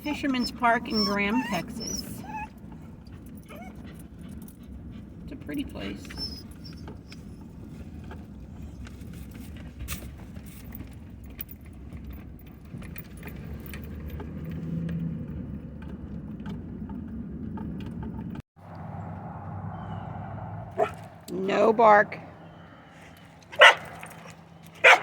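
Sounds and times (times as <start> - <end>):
vehicle rumbling: 0.0 - 25.0
metallic jingling and clicks: 9.9 - 14.9.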